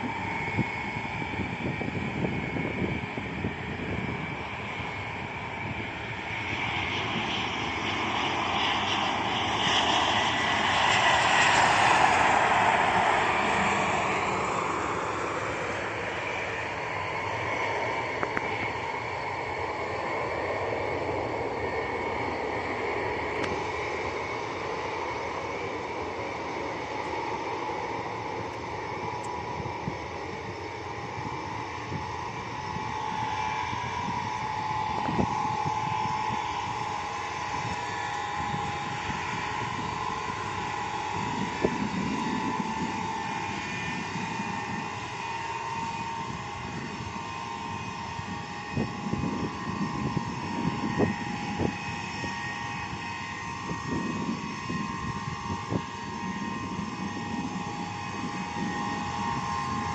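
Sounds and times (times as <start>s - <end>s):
jet engines whining: 0.0s - 59.9s.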